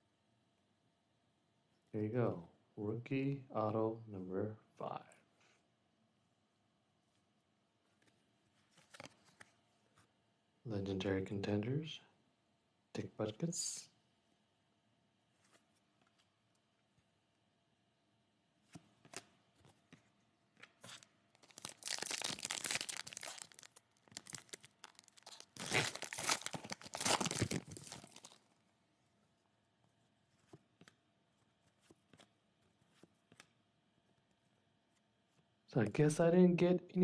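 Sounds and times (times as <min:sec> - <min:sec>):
plastic wrapping crinkling: 0:20.9 - 0:28.5.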